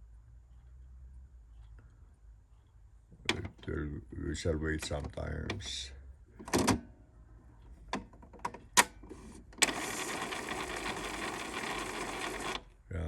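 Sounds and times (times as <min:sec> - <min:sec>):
printer mechanical whirr: 0:09.1 - 0:12.6
printer clicks and rattle: 0:09.6 - 0:12.6.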